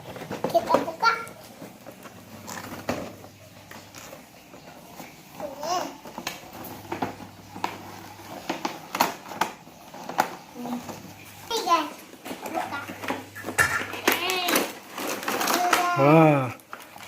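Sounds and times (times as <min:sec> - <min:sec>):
plastic packaging clicks and crackles: 0:00.0 - 0:17.0
child's gliding vocal sound: 0:05.3 - 0:06.2.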